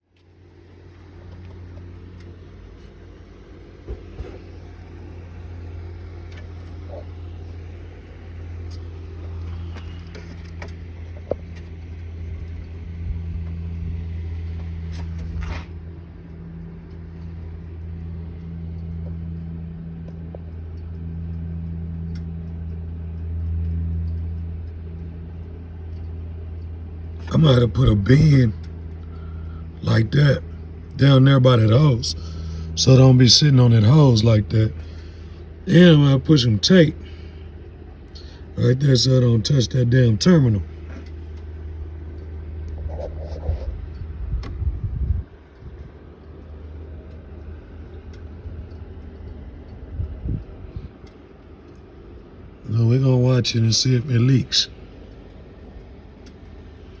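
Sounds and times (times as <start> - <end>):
car engine idling: 0.1 - 57.0
faint clicks and knocks: 6.2 - 27.3.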